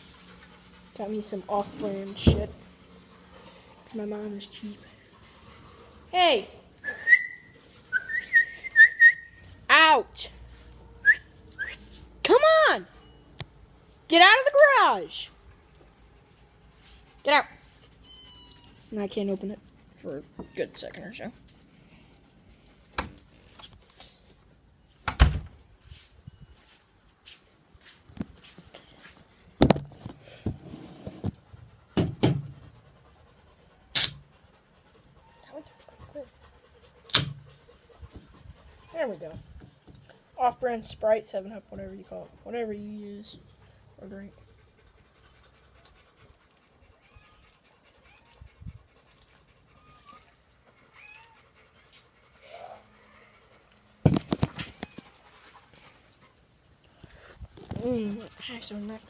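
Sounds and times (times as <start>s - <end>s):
dog panting: 0.0s - 6.1s, 16.0s - 24.4s, 31.2s - 54.0s, 54.9s - 59.0s
short sharp hiss: 34.0s - 34.2s.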